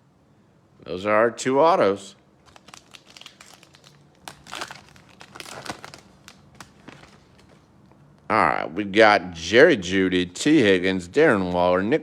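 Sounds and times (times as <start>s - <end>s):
wrapper crinkling: 2.4s - 7.7s.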